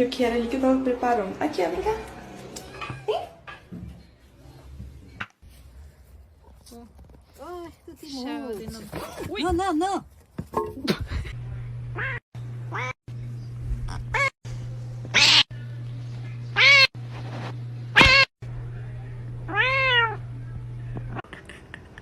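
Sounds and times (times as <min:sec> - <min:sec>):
steady low hum: 0:10.8 - 0:21.2
cats meowing: 0:15.2 - 0:15.5, 0:16.6 - 0:16.9, 0:18.0 - 0:18.3, 0:19.5 - 0:20.2.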